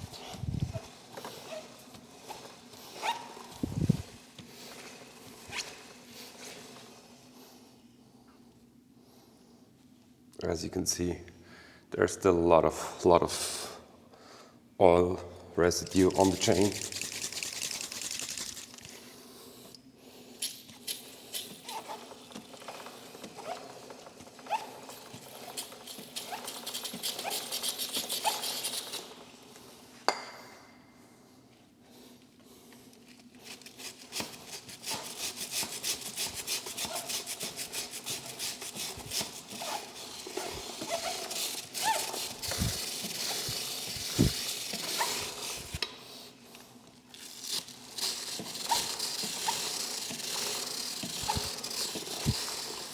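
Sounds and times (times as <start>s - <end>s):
cloth rubbing on chain: 0.0s - 6.8s, 15.9s - 19.0s, 20.8s - 29.2s, 33.4s - 45.8s, 47.2s - 52.9s.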